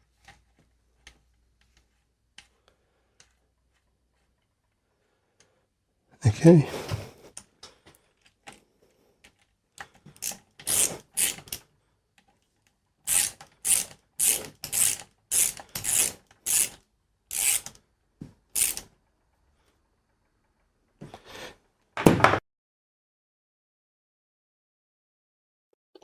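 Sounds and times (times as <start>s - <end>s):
socket ratchet clicking: 10.2s - 11.6s, 13.1s - 17.8s, 18.6s - 18.9s.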